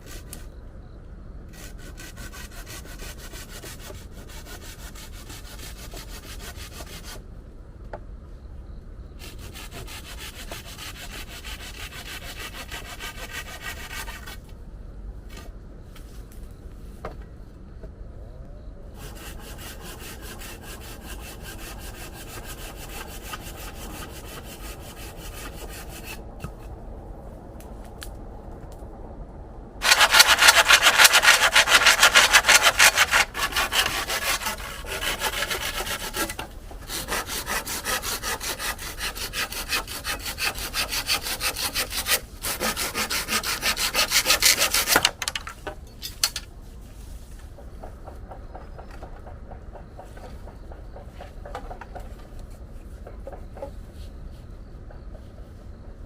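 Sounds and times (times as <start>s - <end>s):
hand saw cutting wood: 1.5s - 7.2s, 9.2s - 14.4s, 19.0s - 26.2s, 29.8s - 45.5s.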